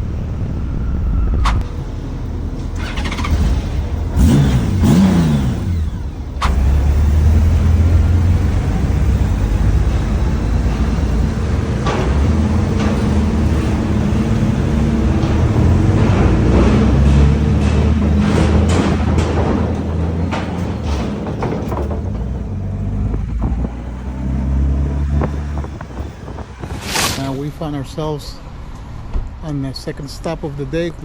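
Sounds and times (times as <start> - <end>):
motorcycle engine revving: 2.5 - 21.3, 22.0 - 26.8.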